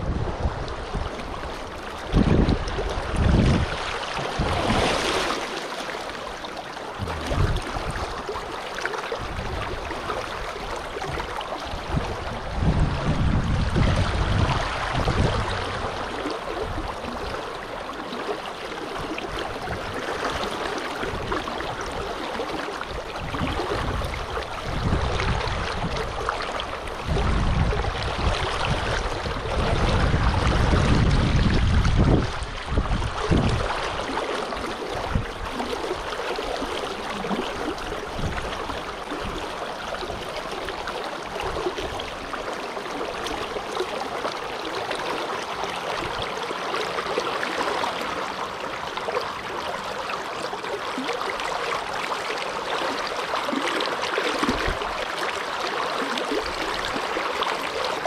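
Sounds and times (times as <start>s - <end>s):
wind buffeting microphone: 0.0s - 4.9s, 7.0s - 8.5s, 9.2s - 17.8s, 22.9s - 40.4s
river water rushing: 0.0s - 58.0s.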